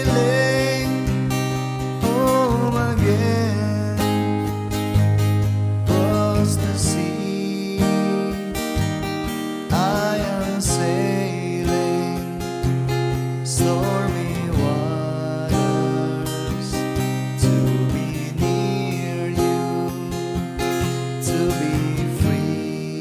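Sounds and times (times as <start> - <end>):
acoustic guitar strumming chords: 0.0 - 23.0.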